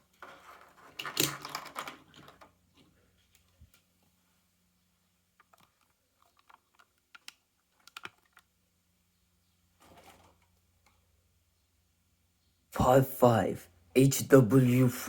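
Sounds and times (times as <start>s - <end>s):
toy cars clicking and tapping: 0.0s - 2.6s, 5.4s - 8.5s.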